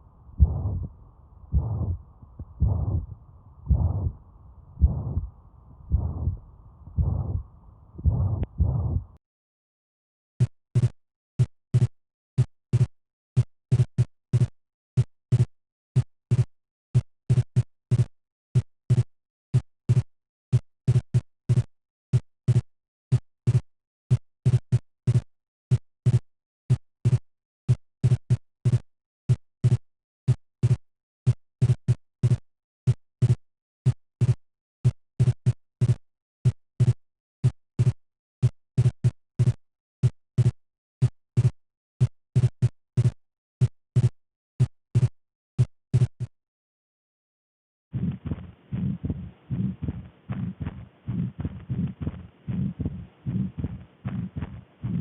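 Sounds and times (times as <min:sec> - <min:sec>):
heartbeat lub-dub sounds: 0:00.0 - 0:09.2, 0:48.0 - 0:55.0.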